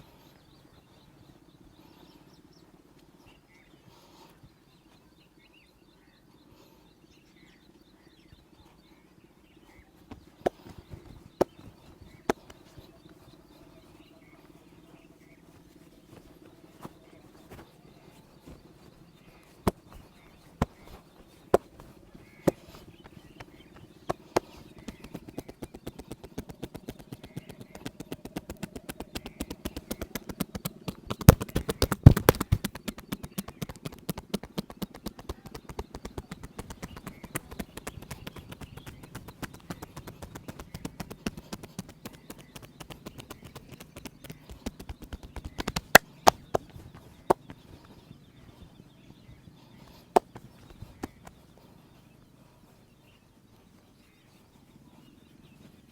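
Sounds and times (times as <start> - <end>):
quick chopping massage strokes: 10.1 - 14.6, 15.5 - 48.7, 49.6 - 52.6
hands slapping body: 10.2 - 12.9, 19.6 - 48.0, 49.8 - 51.4.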